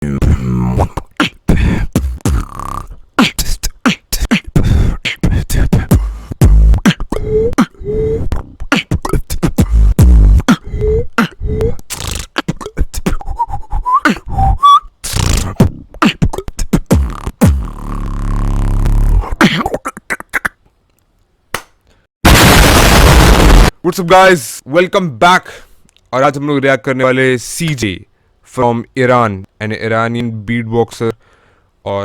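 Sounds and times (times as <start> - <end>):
pitched vocal blips: 0.0 - 17.4, 19.2 - 20.6
beatboxing: 0.0 - 20.6.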